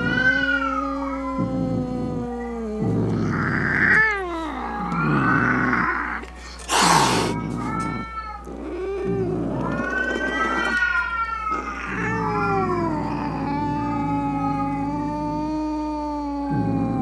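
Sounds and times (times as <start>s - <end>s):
cat yowling: 0.0s - 17.0s.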